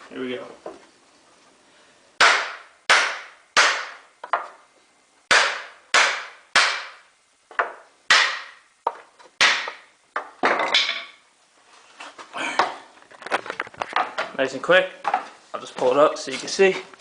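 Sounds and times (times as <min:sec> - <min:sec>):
hammer striking wood: 0:02.2 - 0:04.6, 0:05.3 - 0:11.1.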